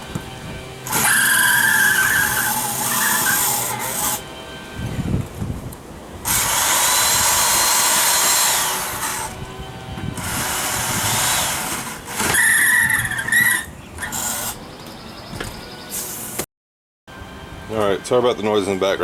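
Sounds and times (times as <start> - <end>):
electric drill running: 0.8 - 4.2, 6.2 - 9.5, 10.2 - 14.6
drill bit squealing on metal: 0.8 - 4.3, 6.3 - 14.9.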